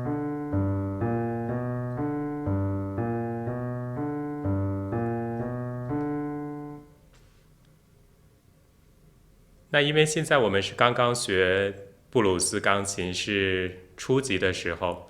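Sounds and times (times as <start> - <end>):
blues piano: 0.0 - 7.0.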